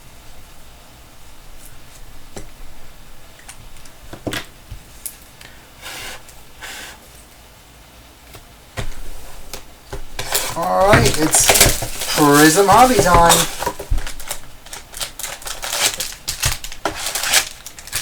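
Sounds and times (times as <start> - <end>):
cards clicking and tapping: 10.2 - 18.0
packaging rustling: 10.2 - 18.0.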